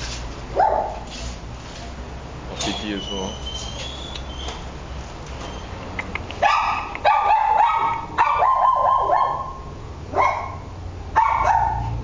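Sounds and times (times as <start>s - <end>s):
dog barking: 0.6s - 1.0s, 6.4s - 12.0s.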